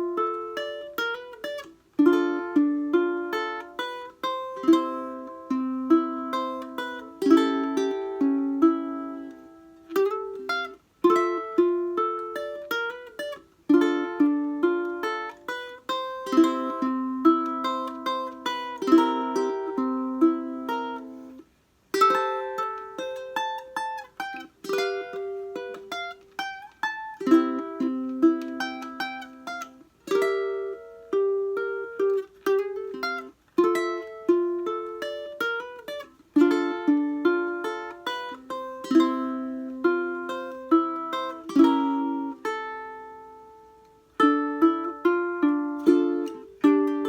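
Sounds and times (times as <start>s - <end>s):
ukulele fingerstyle playing: 0.0s - 47.0s.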